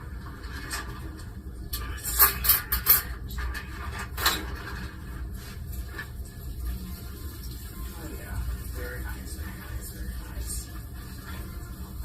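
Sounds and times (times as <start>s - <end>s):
low steady hum: 0.0s - 12.0s
utensils scraping cookware: 0.3s - 6.1s.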